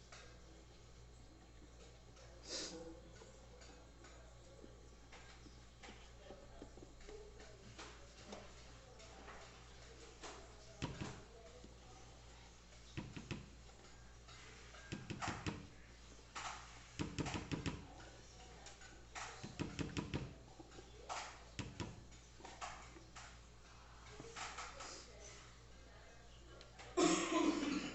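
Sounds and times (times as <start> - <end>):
kitchen utensils clicking and knocking: 6.8 - 24.9.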